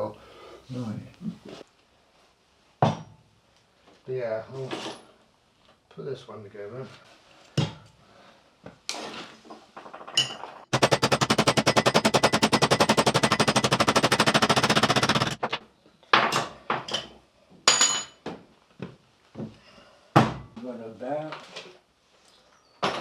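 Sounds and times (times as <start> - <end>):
power tool hammering rapidly: 10.7 - 15.6.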